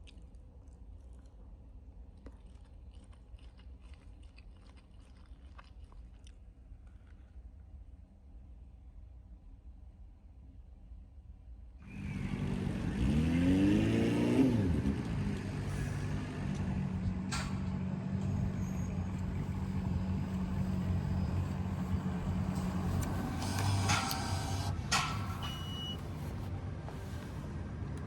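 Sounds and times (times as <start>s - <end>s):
vehicle motor whine: 11.8s - 28.0s.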